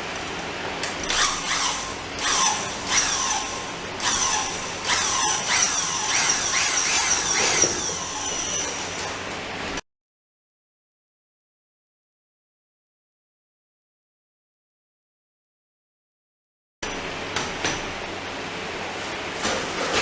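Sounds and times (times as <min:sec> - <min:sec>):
electric mixer whining in mortar: 0:01.1 - 0:09.2.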